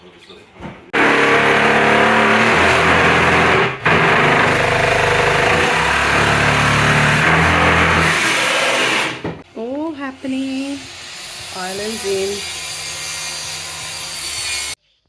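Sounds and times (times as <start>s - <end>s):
power tool motor running: 1.0s - 9.3s.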